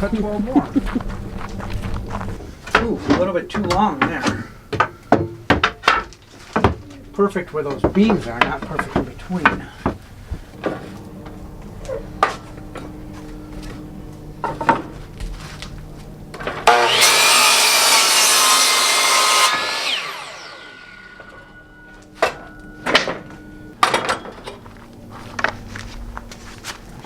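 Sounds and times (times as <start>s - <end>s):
knocks of wood being handled: 2.6s - 11.4s
power saw cutting wood: 10.6s - 22.4s.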